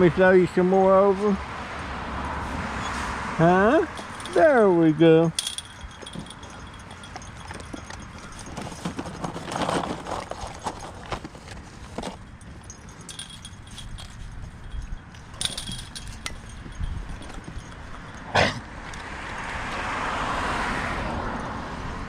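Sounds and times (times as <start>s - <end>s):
vehicle passing: 0.0s - 8.9s, 14.4s - 22.0s.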